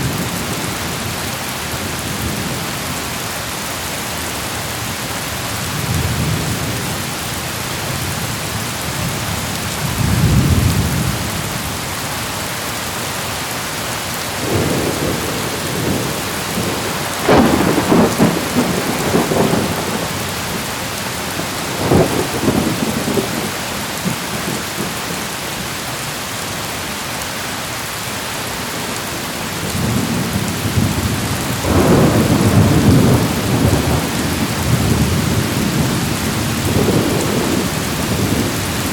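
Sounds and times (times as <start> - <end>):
heavy rain falling: 0.0 - 38.9
thunder rumbling: 14.4 - 25.2, 29.3 - 38.9.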